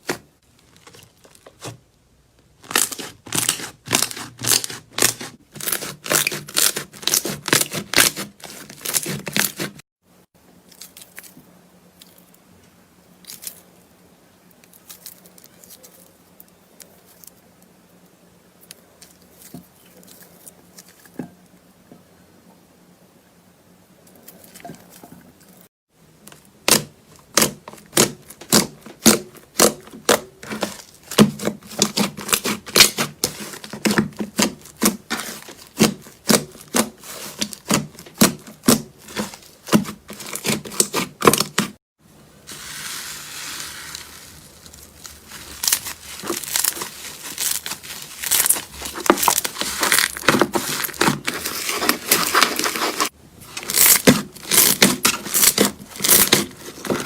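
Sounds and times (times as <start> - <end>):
slime crackling: 42.5 - 57.0.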